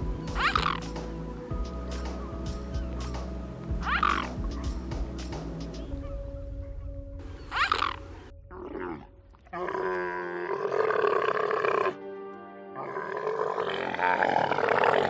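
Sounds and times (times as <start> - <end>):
high sweeping animal call: 0.0 - 1.1, 3.8 - 4.8, 5.7 - 12.0
background music: 0.0 - 15.0
deep long animal call: 7.4 - 12.0, 12.8 - 15.0.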